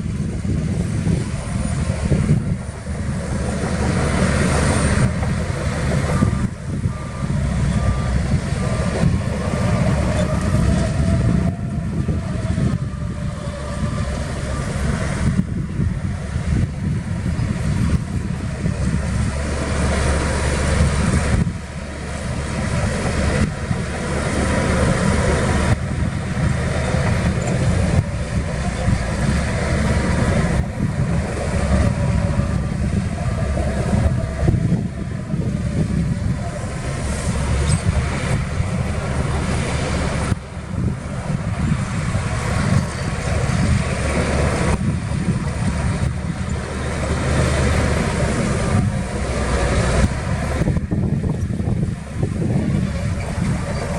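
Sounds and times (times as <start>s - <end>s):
heavy diesel engines under load: 0.0s - 53.9s
reversing alarm beeping: 4.6s - 15.4s.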